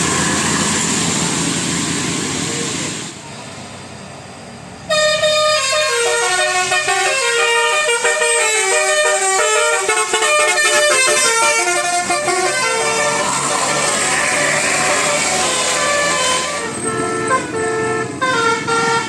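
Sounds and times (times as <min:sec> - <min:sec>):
bus horn playing fast tune: 0:04.9 - 0:19.0.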